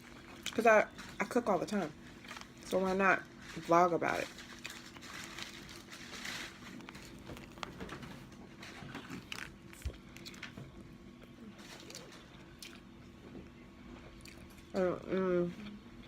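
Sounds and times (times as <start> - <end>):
chewing sandwich: 4.2 - 14.7.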